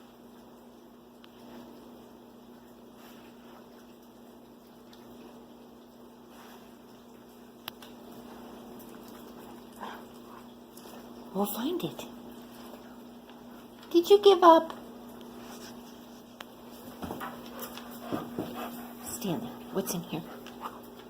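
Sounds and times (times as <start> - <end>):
steady electrical hum: 0.0 - 21.0
dog rustling fabric mat: 15.3 - 21.0.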